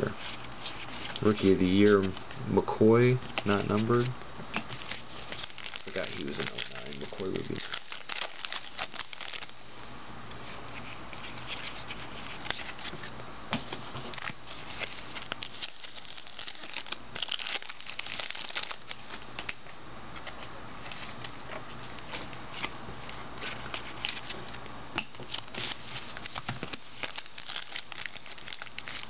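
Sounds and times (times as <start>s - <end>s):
cards shuffled: 3.4s - 9.5s, 23.4s - 29.0s
card pack wrappers crinkling and tearing: 4.6s - 9.6s, 14.0s - 21.4s, 22.5s - 29.0s.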